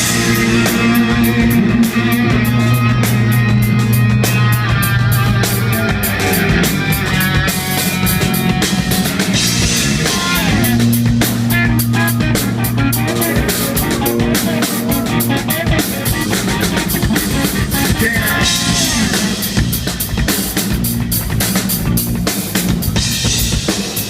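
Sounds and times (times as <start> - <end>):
rock band playing live: 0.0 - 24.0
held low note: 10.8 - 17.6.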